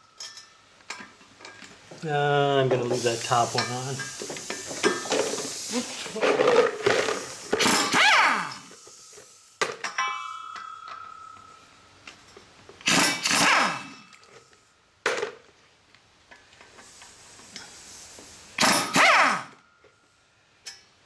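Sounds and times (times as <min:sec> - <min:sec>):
power driver spinning screws: 0:04.1 - 0:08.8, 0:12.8 - 0:14.0, 0:17.5 - 0:19.5
sharp metal clank: 0:07.5 - 0:08.7, 0:12.8 - 0:14.2, 0:18.6 - 0:19.4
metal part ringing: 0:09.6 - 0:13.3.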